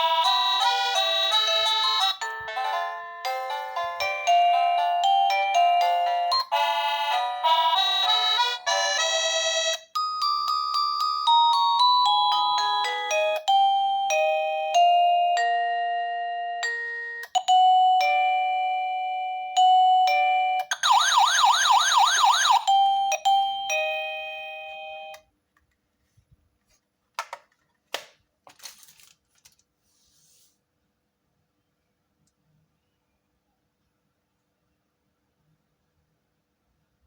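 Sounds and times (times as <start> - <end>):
electronic doorbell chime melody: 0.0 - 25.3.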